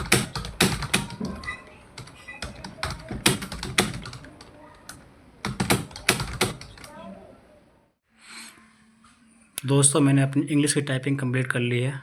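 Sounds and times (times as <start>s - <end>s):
keyboard typing: 0.0s - 7.0s.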